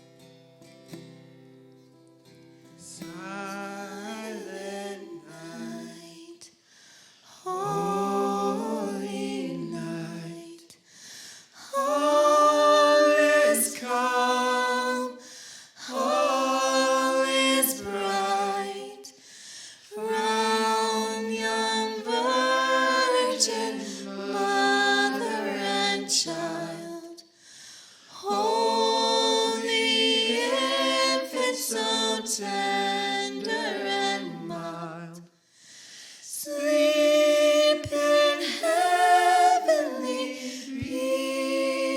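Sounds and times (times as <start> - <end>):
voices singing in harmony: 2.8 - 6.6, 7.3 - 10.8, 11.5 - 27.3, 28.1 - 35.4, 36.2 - 41.9.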